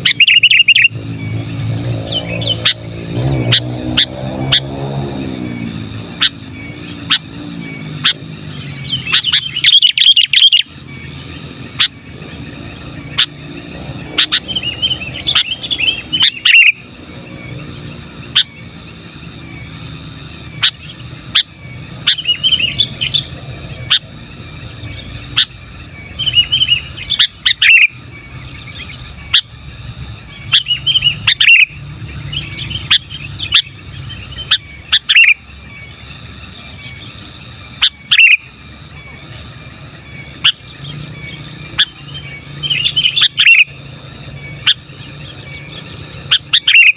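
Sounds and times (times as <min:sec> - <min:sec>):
sharp single bird chirps: 0:00.0 - 0:18.7, 0:20.3 - 0:29.6, 0:30.2 - 0:39.2, 0:40.0 - 0:46.9
bulbul warbling song: 0:00.0 - 0:46.9.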